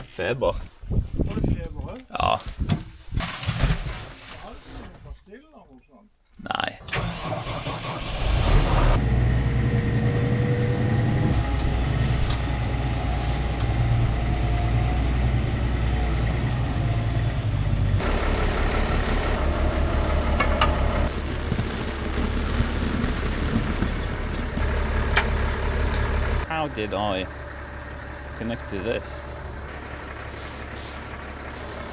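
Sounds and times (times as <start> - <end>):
tractor diesel engine running: 6.9 - 31.9.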